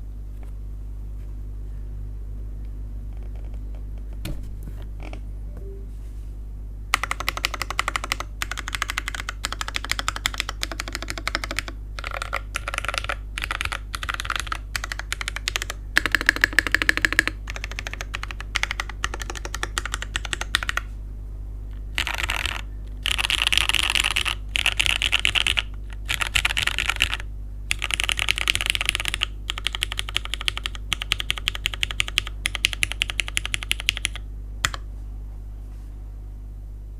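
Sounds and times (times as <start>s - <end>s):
steady low hum: 0.0s - 36.9s
mechanical keyboard typing: 6.9s - 20.9s, 21.9s - 34.8s.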